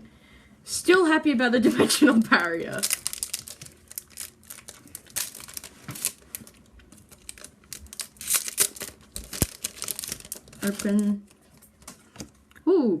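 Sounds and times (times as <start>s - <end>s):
foil wrapper crinkling and tearing: 2.3s - 12.3s.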